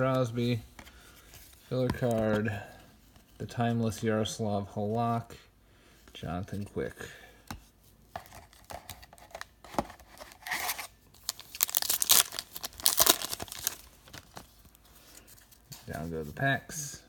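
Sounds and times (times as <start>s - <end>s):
card wrappers tearing and crinkling: 8.4s - 14.8s.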